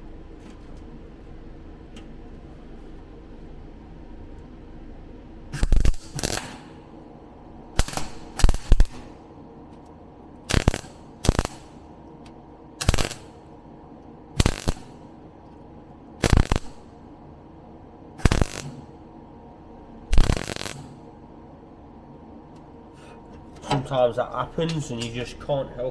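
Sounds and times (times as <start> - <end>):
electric welder bursts: 5.5 - 6.8, 7.7 - 9.2, 10.5 - 11.8, 12.8 - 13.4, 14.4 - 15.0, 16.2 - 17.0, 18.2 - 18.9, 20.1 - 21.1.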